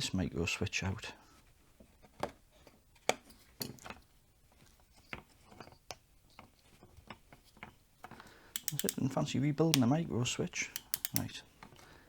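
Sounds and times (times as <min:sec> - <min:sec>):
plastic clicks and taps: 0:08.6 - 0:09.9, 0:10.7 - 0:11.3.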